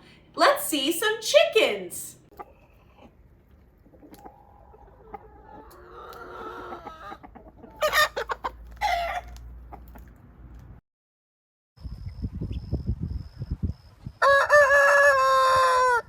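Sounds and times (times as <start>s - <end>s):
chickens clucking: 2.3s - 10.2s
rooster crowing: 14.2s - 16.0s.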